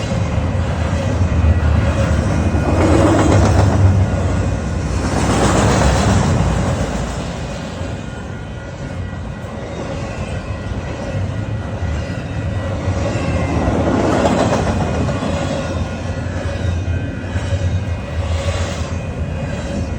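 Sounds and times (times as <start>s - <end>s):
train wheels on rails: 0.0s - 19.9s.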